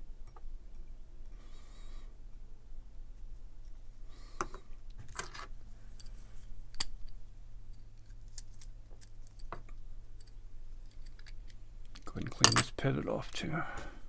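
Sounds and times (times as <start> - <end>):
steady low hum: 0.0 - 14.0
small metal parts clinking: 5.1 - 7.1, 7.7 - 12.8.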